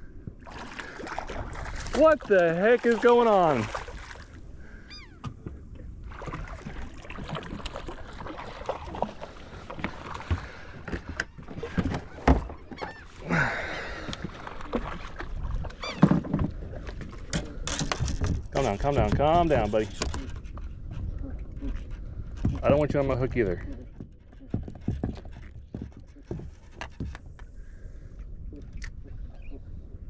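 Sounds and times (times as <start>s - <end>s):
knocks and clicks in a boat: 0.2s - 27.8s.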